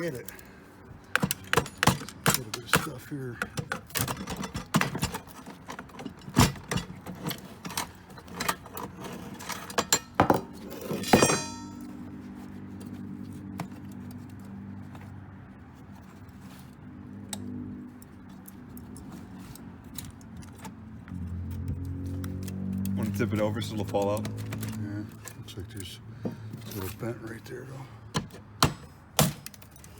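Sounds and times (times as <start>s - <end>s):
loud ringing metallic clang: 11.1s - 11.9s.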